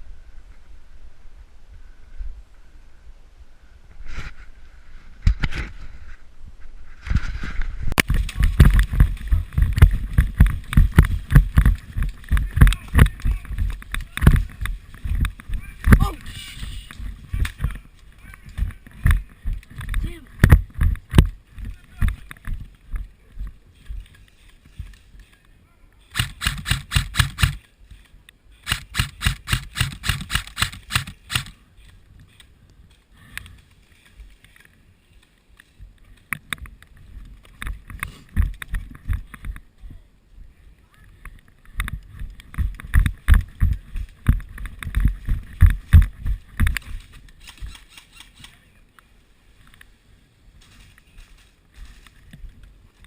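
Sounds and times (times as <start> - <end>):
rustling and rattling: 6.8 - 25.4, 41.2 - 48.4
airsoft rifle shots: 26.1 - 27.6, 28.6 - 31.6.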